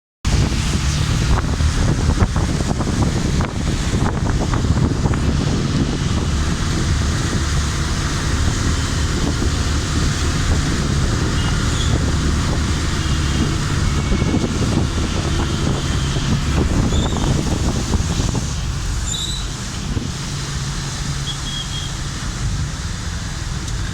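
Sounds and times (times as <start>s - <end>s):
wind buffeting microphone: 0.3s - 19.0s.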